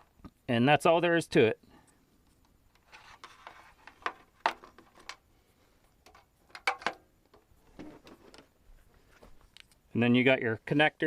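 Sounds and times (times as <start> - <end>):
cable rustling: 2.2 - 9.8.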